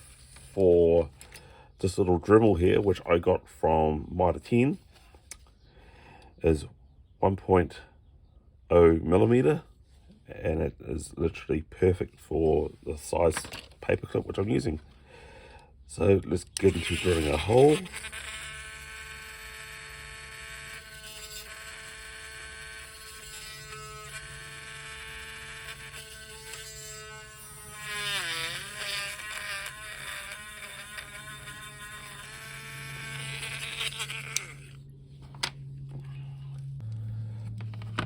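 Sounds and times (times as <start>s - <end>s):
rotary tool whining while drilling: 16.6s - 34.8s.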